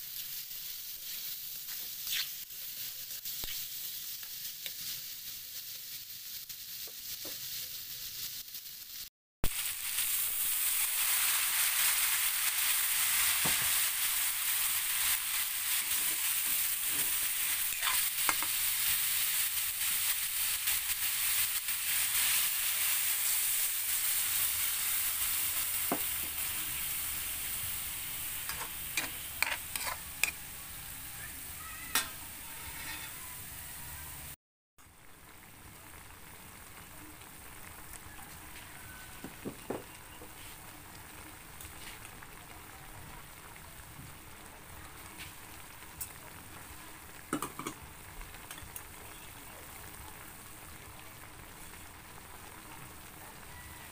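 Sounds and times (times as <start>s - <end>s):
food sizzling in a pan: 0.0s - 53.9s
utensil stirring clicks and scrapes: 28.5s - 30.4s.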